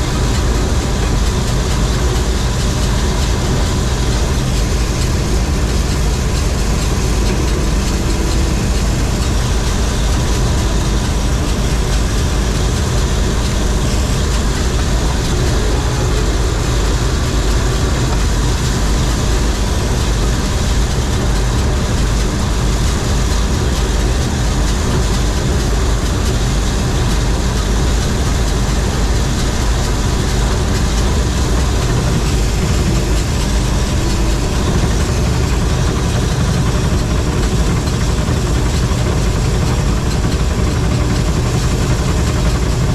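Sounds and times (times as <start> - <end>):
combine engine drone: 0.0 - 42.9
machinery rattling and whirring: 0.0 - 42.9.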